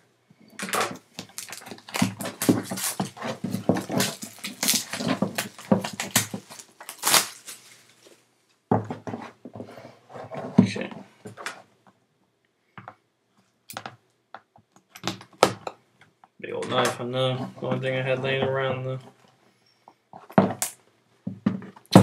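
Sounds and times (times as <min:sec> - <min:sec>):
packaging tearing and rustling: 0:00.6 - 0:08.3.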